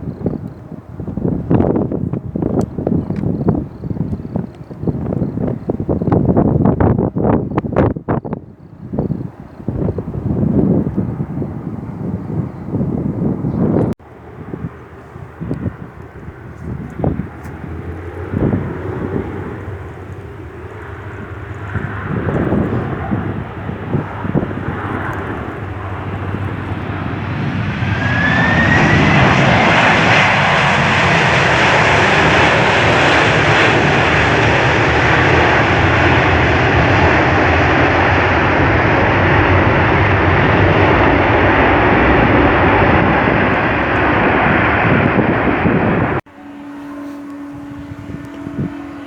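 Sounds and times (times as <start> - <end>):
jet engines spooling up: 7.5 - 49.0
steady hum: 45.0 - 49.0.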